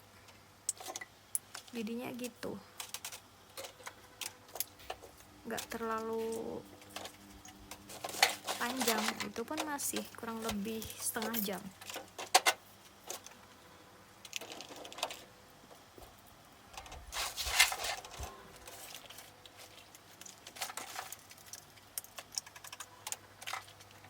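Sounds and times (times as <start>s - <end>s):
small objects clicking and tapping: 0.3s - 13.4s, 14.2s - 24.0s
rustle: 14.3s - 21.8s.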